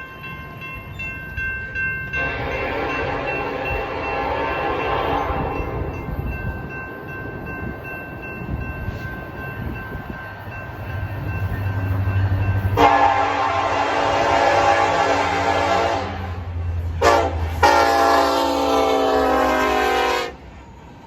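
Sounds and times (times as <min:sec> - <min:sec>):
train engine rumble: 0:00.0 - 0:21.0
locomotive air horn blast: 0:02.2 - 0:05.6, 0:12.8 - 0:16.4, 0:17.0 - 0:20.4.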